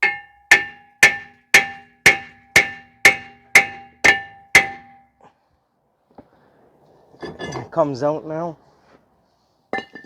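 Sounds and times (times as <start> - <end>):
hammer striking metal rotor: 0.0 - 5.0.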